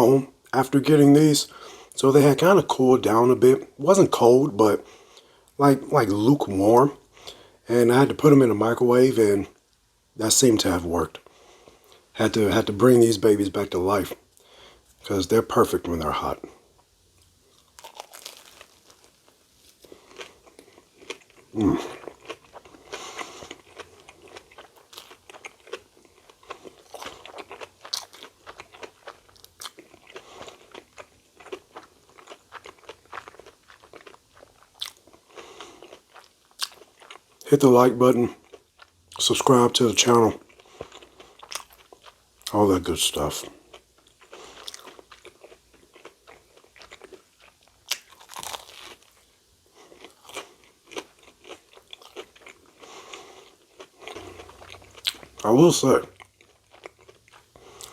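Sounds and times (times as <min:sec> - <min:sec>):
wet crunchy chewing: 0:17.5 - 0:37.4, 0:43.4 - 0:57.9.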